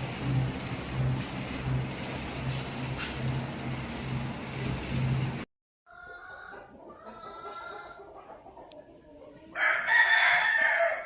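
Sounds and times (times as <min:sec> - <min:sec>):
machine hum: 0:00.0 - 0:05.5
chickens clucking: 0:05.9 - 0:09.6
rooster crowing loudly: 0:09.6 - 0:11.0.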